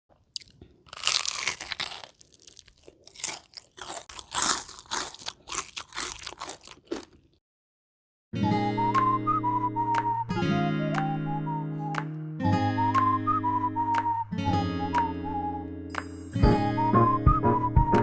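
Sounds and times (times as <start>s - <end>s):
crunchy chewing of fried chicken: 0.1s - 7.4s
guitar music: 8.4s - 18.0s.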